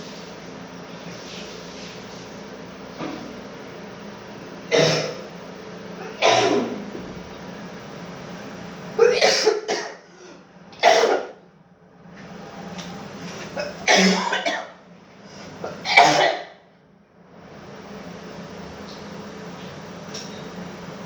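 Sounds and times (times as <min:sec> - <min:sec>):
person coughing: 0:04.7 - 0:05.2, 0:06.0 - 0:06.8, 0:09.0 - 0:11.4, 0:13.6 - 0:14.8, 0:15.6 - 0:16.6.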